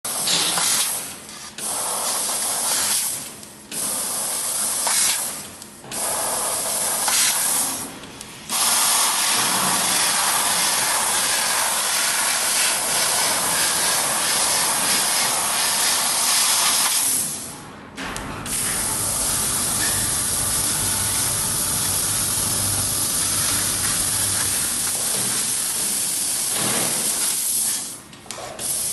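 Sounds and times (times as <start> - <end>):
laser cutter gas jet hissing: 0.1 - 7.8, 8.5 - 17.6, 18.4 - 28.0, 28.6 - 28.9.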